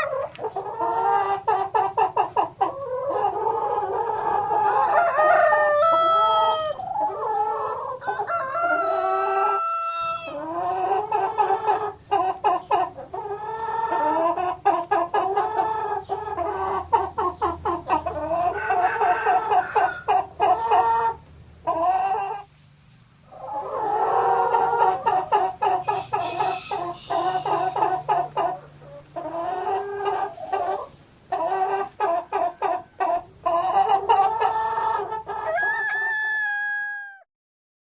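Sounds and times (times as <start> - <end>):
chickens clucking: 0.0 - 37.2
rooster crowing: 4.6 - 6.8, 8.0 - 10.4, 18.4 - 20.1, 25.9 - 27.8, 35.4 - 37.3.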